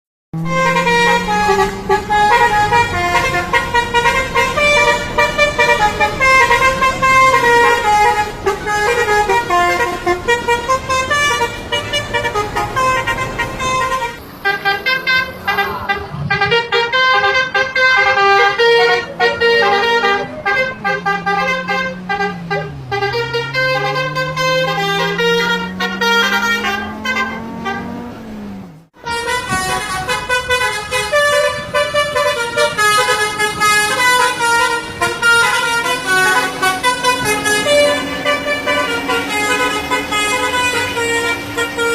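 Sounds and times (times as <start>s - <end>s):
bus multi-tone air horns: 0.4s - 41.9s.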